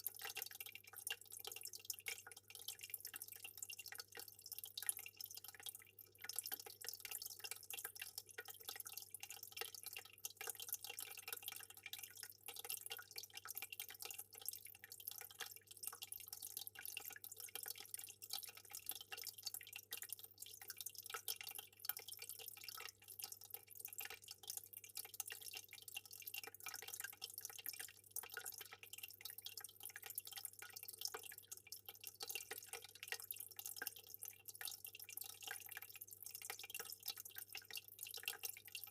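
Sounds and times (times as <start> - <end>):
water trickling and dripping: 0.0 - 38.9.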